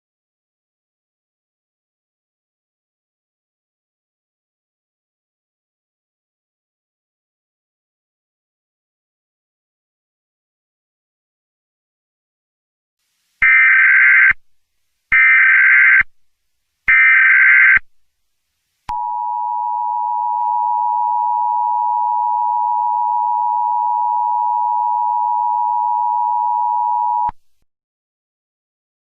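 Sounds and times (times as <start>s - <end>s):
steady attention tone: 18.9s - 27.4s.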